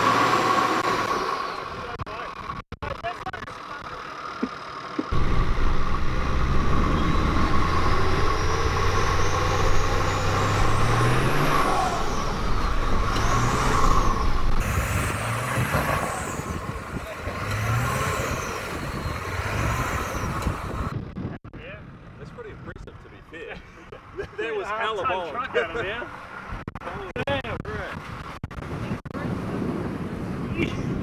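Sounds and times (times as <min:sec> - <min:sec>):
truck engine revving hard: 0:00.0 - 0:01.9, 0:05.1 - 0:21.0.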